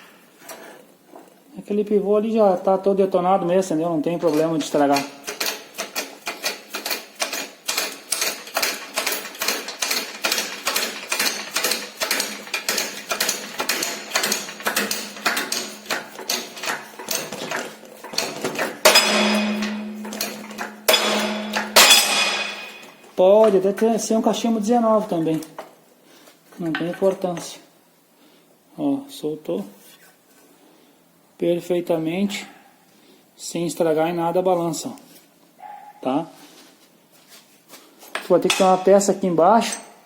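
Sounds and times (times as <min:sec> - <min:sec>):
metallic clacks of shop press: 0:04.2 - 0:23.6, 0:38.2 - 0:38.9
steady hum: 0:18.8 - 0:23.2
sharp bang: 0:18.9 - 0:22.9.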